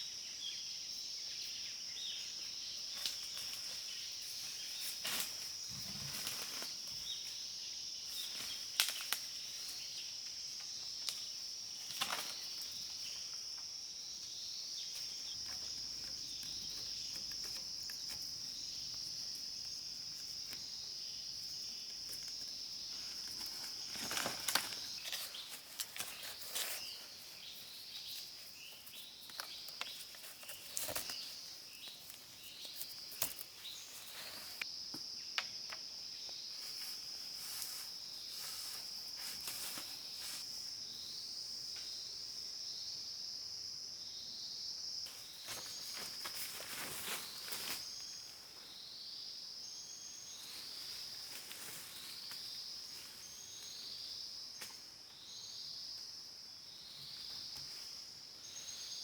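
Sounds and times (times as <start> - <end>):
insects droning: 0.0 - 59.0
rustling in undergrowth: 2.9 - 7.4, 8.1 - 10.0, 14.9 - 34.6, 36.5 - 40.7, 45.1 - 48.5, 50.3 - 53.9.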